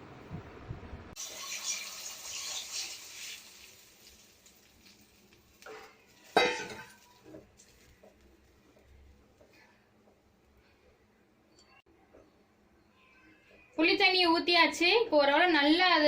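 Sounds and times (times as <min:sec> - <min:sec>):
liquid hissing in hot pan: 0:01.2 - 0:05.9.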